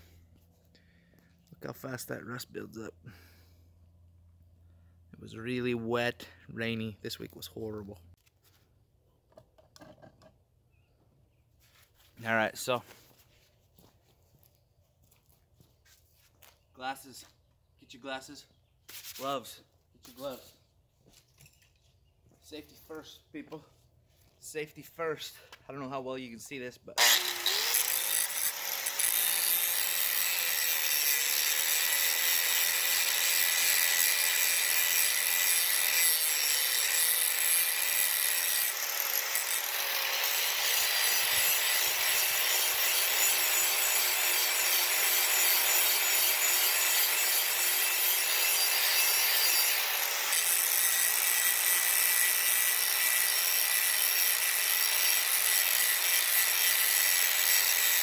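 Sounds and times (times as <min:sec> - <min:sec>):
grinder motor whine: 0:27.0 - 0:36.7
grinder grinding steel blade: 0:27.0 - 0:58.0.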